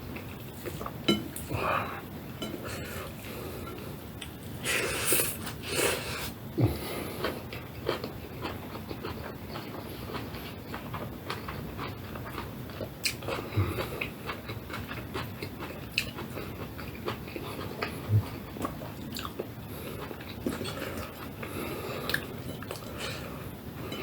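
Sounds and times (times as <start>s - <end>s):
person chewing food: 0.0s - 24.0s.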